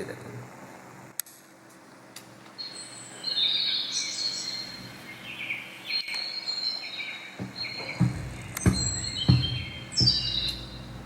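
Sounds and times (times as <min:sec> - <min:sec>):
songbirds chirping and trilling: 0:02.5 - 0:11.0.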